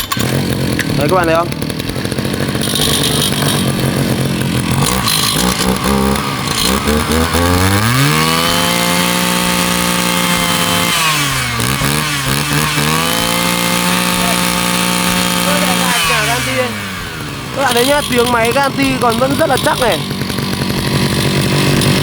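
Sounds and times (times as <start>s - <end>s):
brushcutter engine revving: 0.0s - 22.0s.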